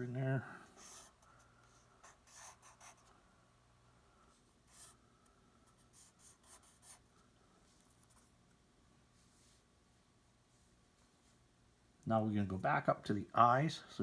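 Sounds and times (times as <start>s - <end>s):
pencil strokes on paper: 0.8s - 3.1s, 5.6s - 7.1s.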